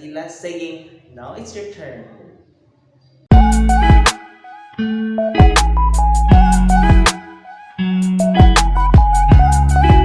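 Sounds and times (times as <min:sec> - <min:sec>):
low bass: 0:03.3 - 0:04.1, 0:05.4 - 0:07.1, 0:08.2 - 0:10.0.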